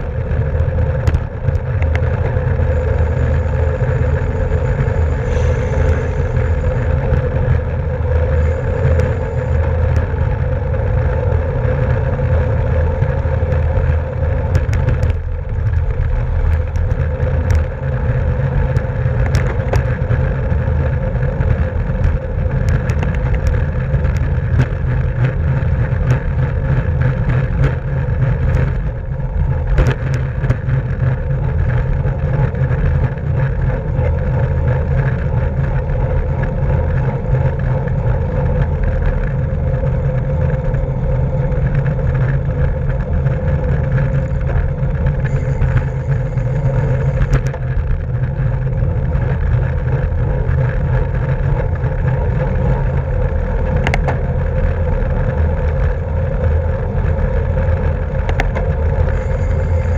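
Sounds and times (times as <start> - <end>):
sharp clicks and ticks: 0.0 - 59.9
steady hum: 0.0 - 59.9
wind buffeting microphone: 0.0 - 59.9.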